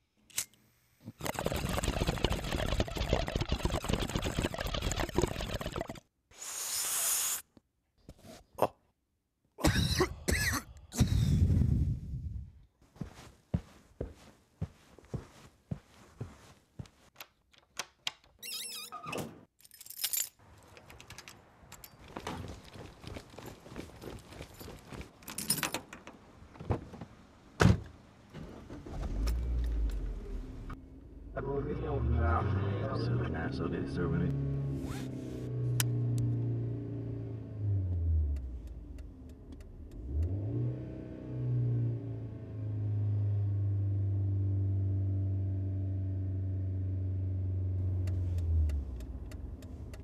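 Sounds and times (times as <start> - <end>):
short hiss: 6.3 - 7.5
person coughing hard: 9.6 - 11.2
keys jangling: 19.6 - 22.2, 23.4 - 26.0
car engine starting and running: 28.2 - 50.0.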